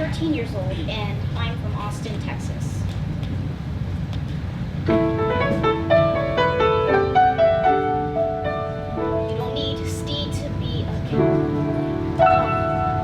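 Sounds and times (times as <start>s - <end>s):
low steady hum: 0.0s - 13.0s
piano show tune: 4.8s - 13.0s.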